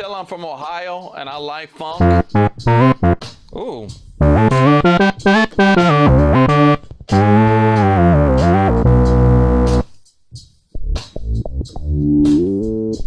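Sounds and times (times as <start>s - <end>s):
funk synth bass notes: 2.0s - 3.2s, 4.2s - 9.8s.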